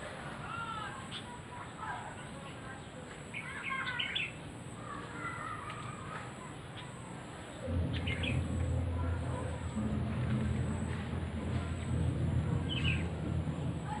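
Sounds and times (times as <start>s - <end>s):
birds chirping: 0.5s - 14.0s
steady high-pitched buzz: 7.0s - 14.0s
low steady hum: 7.4s - 14.0s.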